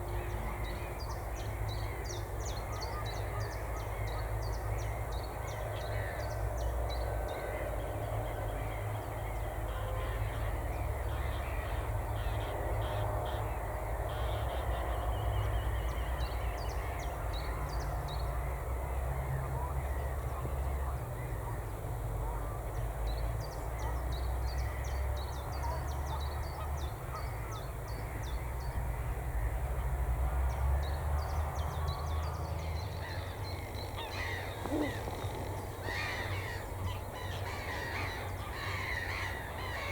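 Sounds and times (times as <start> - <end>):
wild birds chirping: 10.4 - 39.9.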